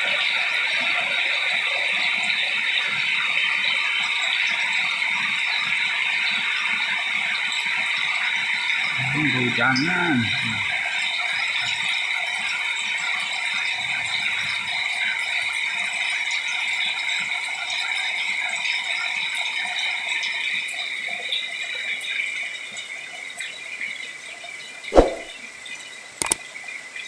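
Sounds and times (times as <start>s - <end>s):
sharp knock: 24.9s - 25.3s.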